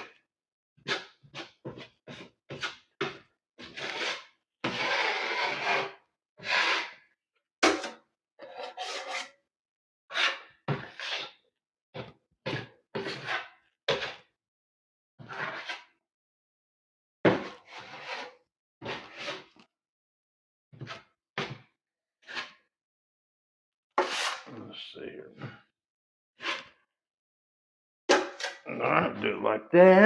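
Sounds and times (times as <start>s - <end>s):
drywall knife scraping joint compound: 0.9s - 7.0s, 7.6s - 9.4s, 10.1s - 11.4s, 12.0s - 14.3s, 15.2s - 15.9s, 17.3s - 19.7s, 22.3s - 22.6s, 24.0s - 24.5s, 26.4s - 26.8s.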